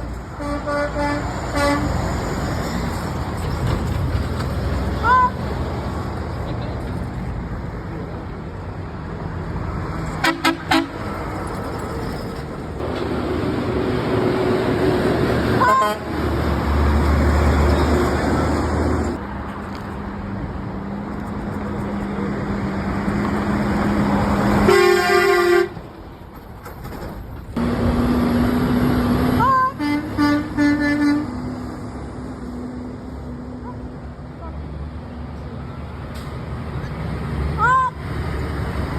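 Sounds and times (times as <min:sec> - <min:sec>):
traffic passing: 0:00.0 - 0:38.9
truck horn honking: 0:00.3 - 0:02.0, 0:05.0 - 0:05.4, 0:10.2 - 0:11.1, 0:15.5 - 0:16.3, 0:24.6 - 0:25.8, 0:29.4 - 0:31.6.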